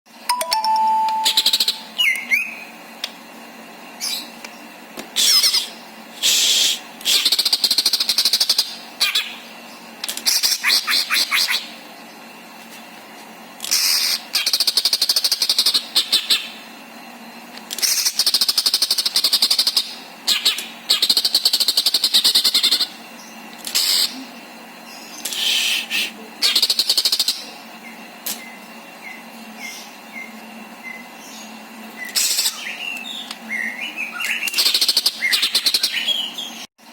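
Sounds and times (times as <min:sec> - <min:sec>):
bird singing rattling trills: 0:00.4 - 0:02.7.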